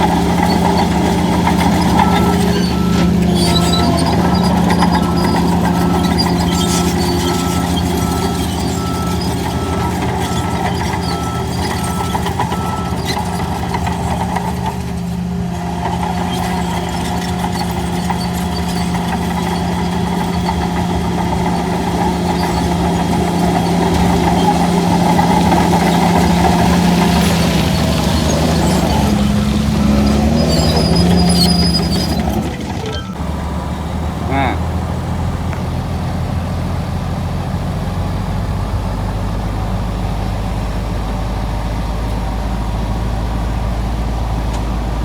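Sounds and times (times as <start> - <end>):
heavy diesel engine running: 0.0 - 45.0
reversing alarm beeping: 0.2 - 13.3, 21.9 - 32.2.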